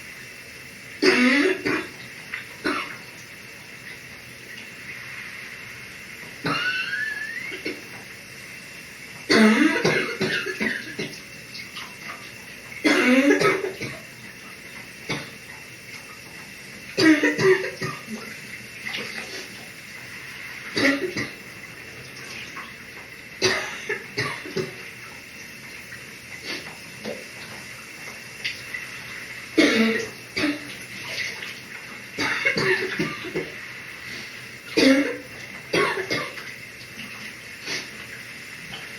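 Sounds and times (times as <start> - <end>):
shower water hissing: 0.0 - 38.9
person coughing: 1.0 - 1.9, 6.4 - 7.0, 9.3 - 11.1, 12.8 - 14.0, 17.0 - 18.2, 20.8 - 21.4, 23.4 - 24.8, 29.6 - 30.7, 32.2 - 33.6, 34.8 - 36.4.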